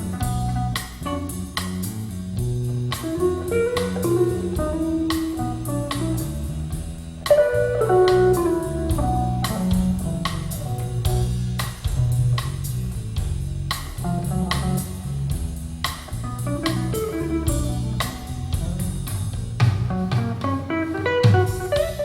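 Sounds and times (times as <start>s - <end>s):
picked guitar melody: 0.0s - 2.0s, 2.9s - 6.5s, 7.2s - 11.3s, 16.2s - 19.0s, 19.6s - 22.0s
bass: 0.0s - 22.0s
steady drum beat: 0.0s - 22.0s.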